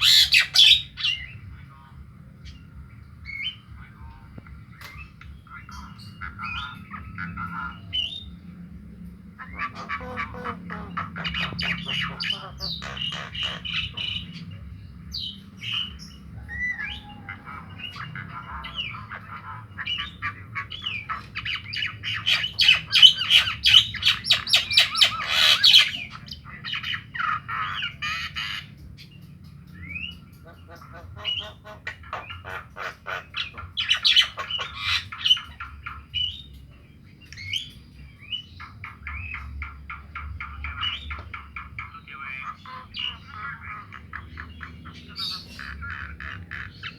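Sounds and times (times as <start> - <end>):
myna squawking and chattering: 0.0 - 1.3, 9.3 - 29.0, 30.4 - 36.4, 38.3 - 46.9.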